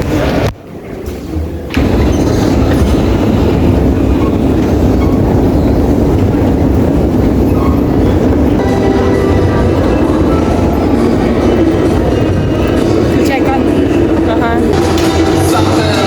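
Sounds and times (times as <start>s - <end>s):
train wheels rumbling: 0.0s - 16.0s.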